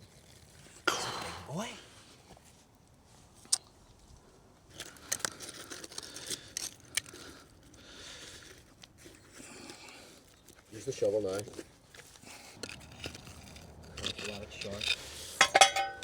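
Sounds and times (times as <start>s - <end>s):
soil and clay scraped by hand: 12.0s - 15.5s.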